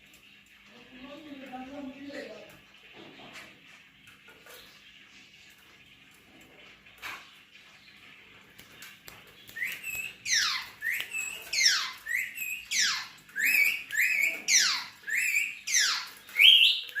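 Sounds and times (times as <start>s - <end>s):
parrot screeches: 9.8s - 17.0s.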